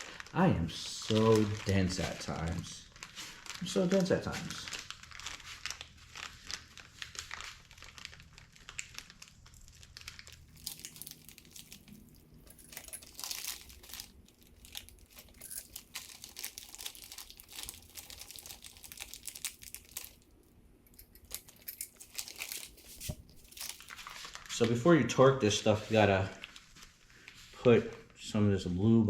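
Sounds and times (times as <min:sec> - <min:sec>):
plastic packaging crinkling: 0:00.0 - 0:28.2.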